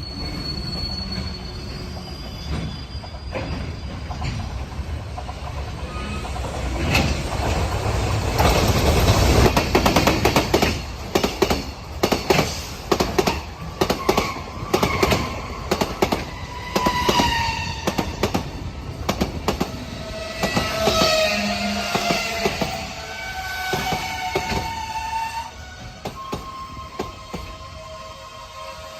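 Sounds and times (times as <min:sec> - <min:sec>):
wheels squealing: 0:00.0 - 0:04.8
train wheels clacking on rail joints: 0:00.2 - 0:23.0.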